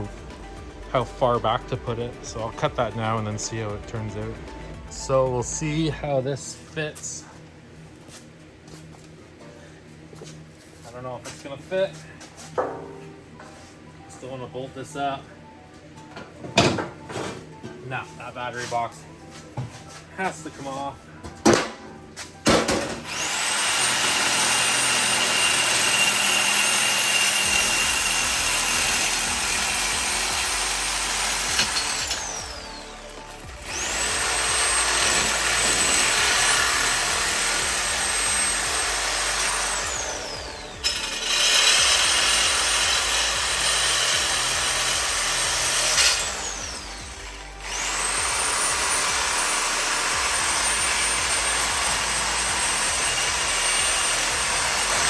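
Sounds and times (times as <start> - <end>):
angle grinder cutting steel: 23.0 - 55.0.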